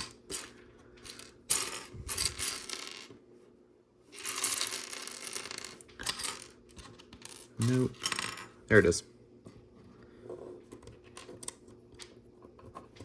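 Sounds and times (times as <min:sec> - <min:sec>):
plastic toy bricks clattering: 0:04.1 - 0:08.5.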